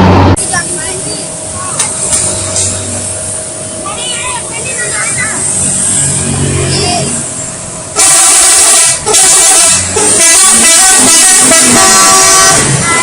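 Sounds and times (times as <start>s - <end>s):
musical bus air horn: 8.0s - 13.0s.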